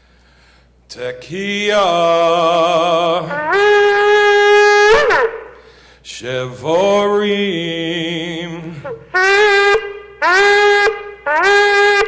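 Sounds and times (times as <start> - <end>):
shofar blast: 2.6 - 5.7, 8.8 - 12.0.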